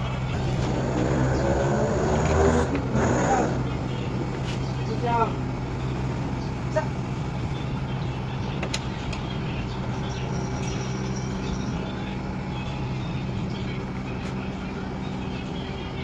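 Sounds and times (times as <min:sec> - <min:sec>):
motor humming: 0:00.2 - 0:08.1.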